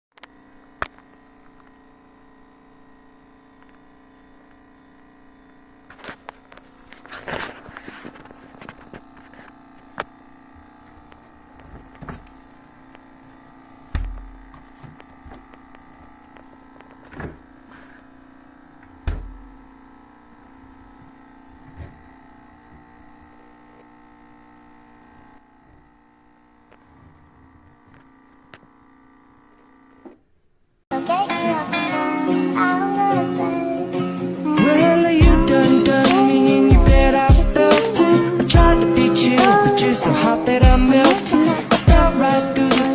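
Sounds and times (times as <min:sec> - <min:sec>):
refrigerator humming: 0:00.1 - 0:30.8, 0:31.4 - 0:42.9
sharp thumps: 0:13.8 - 0:15.6, 0:18.8 - 0:19.7.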